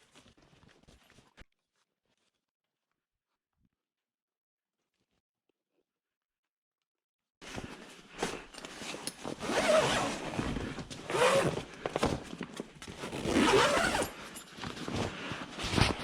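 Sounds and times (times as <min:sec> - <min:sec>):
zipper being pulled closed: 0:09.2 - 0:12.1, 0:12.9 - 0:14.2.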